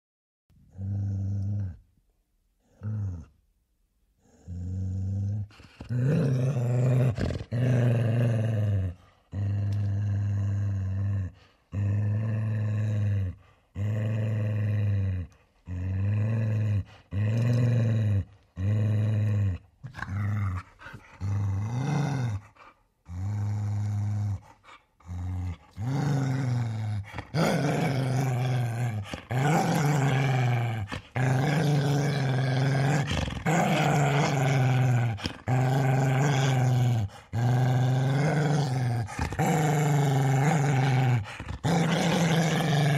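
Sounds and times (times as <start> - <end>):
dog growling deeply: 0.7 - 1.8, 2.7 - 3.4, 4.2 - 42.9.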